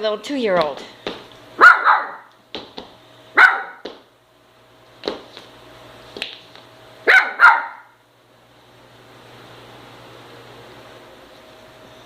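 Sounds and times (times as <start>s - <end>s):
puppy yapping: 1.6s - 2.3s, 3.4s - 3.9s, 7.1s - 8.0s.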